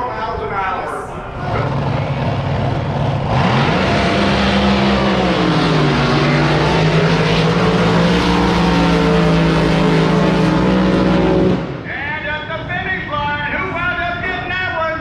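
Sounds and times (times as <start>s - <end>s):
boat engine at full power: 0.0s - 11.9s.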